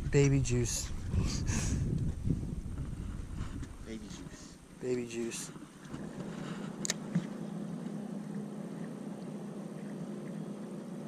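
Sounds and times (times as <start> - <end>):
low even hum: 0.0 - 11.0
water: 0.0 - 11.0
wind: 0.0 - 11.0.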